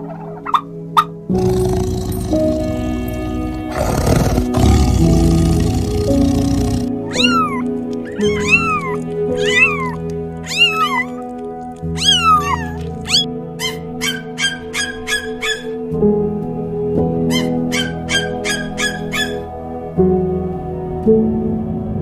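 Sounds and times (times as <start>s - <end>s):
background music: 0.0s - 22.0s
cat meowing: 7.1s - 13.7s.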